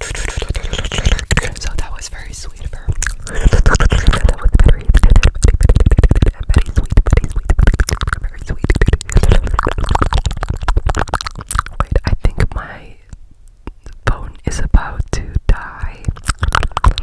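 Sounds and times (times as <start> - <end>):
rapid clicks and pops: 0.0 - 12.5, 15.8 - 17.0
heavy low thumps: 0.0 - 12.6.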